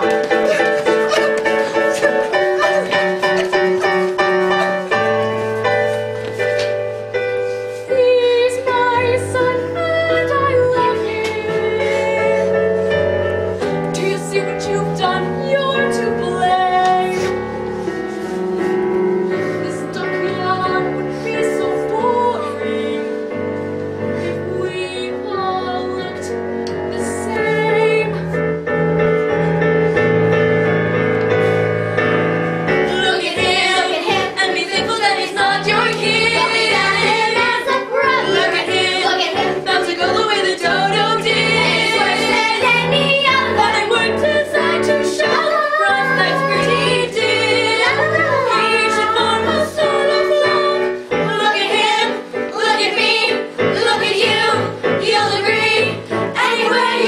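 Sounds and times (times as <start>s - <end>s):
person singing with vibrato: 32.9s - 57.0s.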